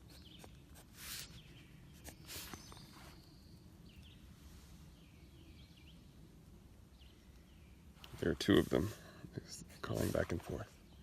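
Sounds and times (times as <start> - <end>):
distant birds whistling: 0.0 - 11.0.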